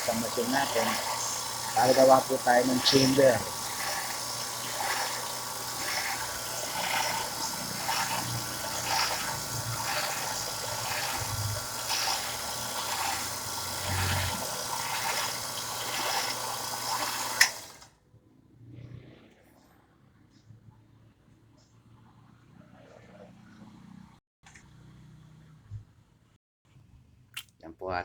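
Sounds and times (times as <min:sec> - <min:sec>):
metal rasping: 0:00.0 - 0:17.8.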